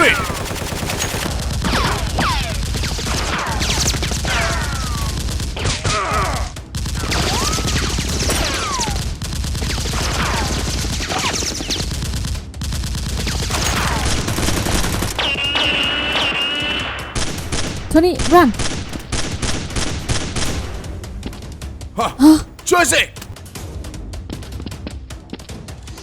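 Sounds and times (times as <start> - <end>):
rapid machine-gun fire: 0.0 - 5.8, 6.7 - 16.1, 17.2 - 17.9, 18.5 - 20.8.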